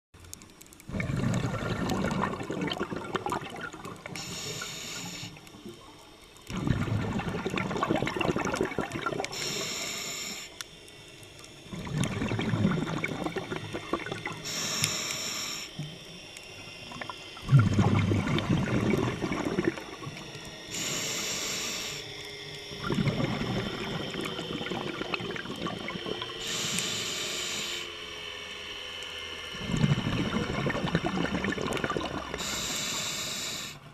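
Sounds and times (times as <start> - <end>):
rumbling exhaled bubbles: 0.8 - 4.6, 5.3 - 9.6, 11.5 - 14.6, 15.8 - 20.8, 22.6 - 26.7, 29.5 - 32.7
regulator inhale hiss: 4.0 - 5.8, 9.2 - 10.7, 14.4 - 15.9, 19.8 - 22.3, 26.3 - 28.0, 32.3 - 33.9.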